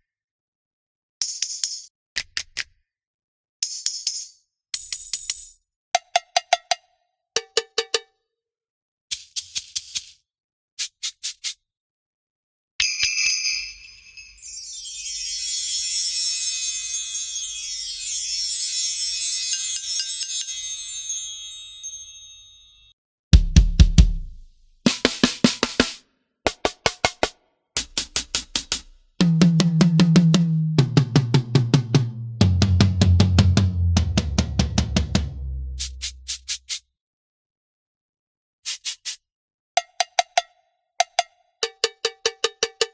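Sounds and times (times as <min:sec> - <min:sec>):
high shimmering swell: 0:13.8 - 0:22.8
short dry drum hits: 0:27.8 - 0:36.5
ringing percussion hit: 0:30.9 - 0:36.3.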